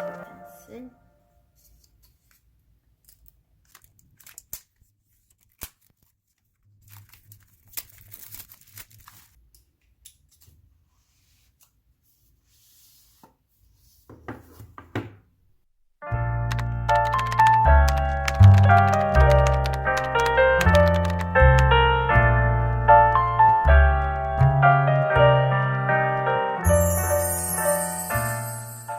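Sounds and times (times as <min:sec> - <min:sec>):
packaging tearing and crinkling: 0:03.6 - 0:09.4.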